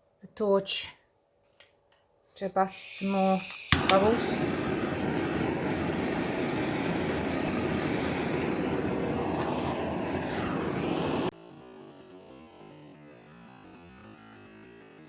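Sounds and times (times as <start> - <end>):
torch flame hissing: 2.7 - 14.7.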